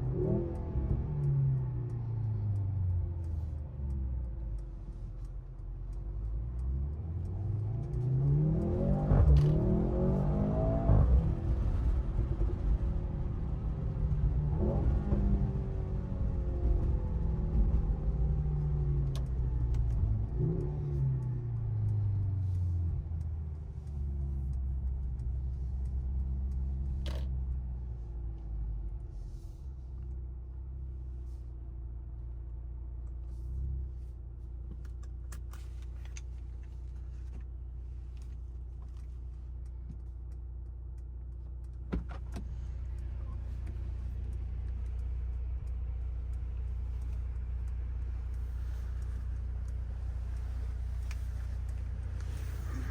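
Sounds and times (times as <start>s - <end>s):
car engine slowing down: 0.0s - 52.9s.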